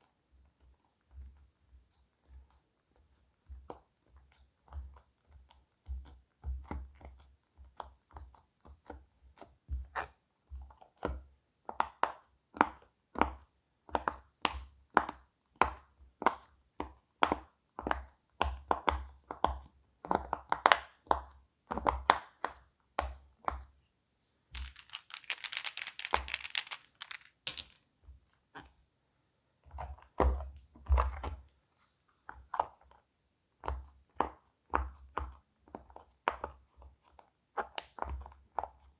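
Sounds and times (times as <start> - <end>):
scratchy rustling: 24.6 - 27.8.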